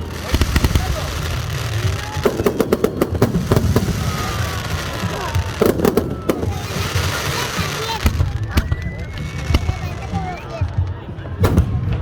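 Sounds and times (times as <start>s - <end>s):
fireworks bangs: 0.0s - 12.0s.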